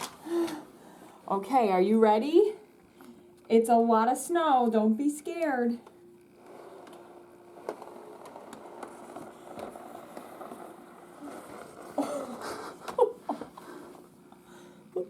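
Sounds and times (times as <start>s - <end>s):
faint indoor hum: 0.0s - 15.0s.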